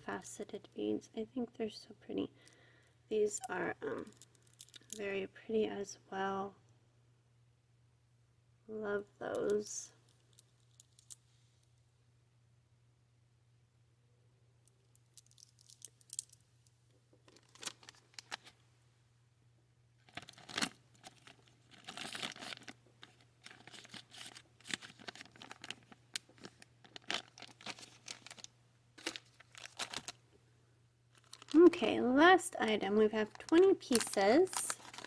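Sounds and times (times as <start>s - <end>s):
plastic tearing rustles: 17.2s - 18.5s, 20.0s - 30.2s, 31.1s - 31.8s, 33.1s - 35.0s
plastic bag crinkling: 17.2s - 18.6s, 20.0s - 30.2s, 31.1s - 35.0s.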